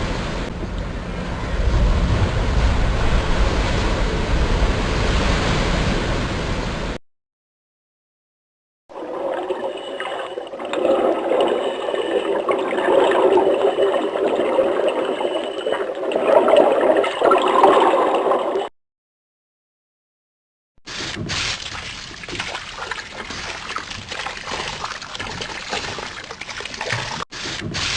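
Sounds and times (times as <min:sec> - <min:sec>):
water rushing: 0:00.0 - 0:07.0.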